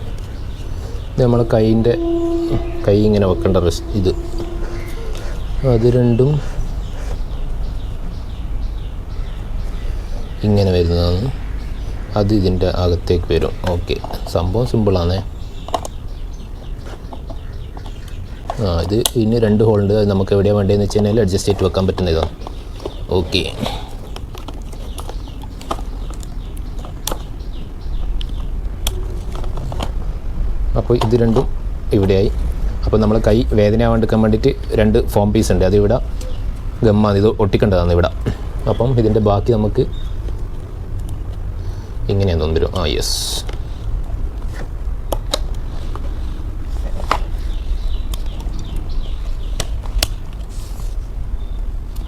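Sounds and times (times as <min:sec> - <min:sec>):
low hum: 0:00.0 - 0:07.8
birds chirping: 0:00.0 - 0:52.0
plastic parts clicking and knocking: 0:20.8 - 0:27.4, 0:44.4 - 0:46.2
plastic and metal parts clicking: 0:24.0 - 0:27.3.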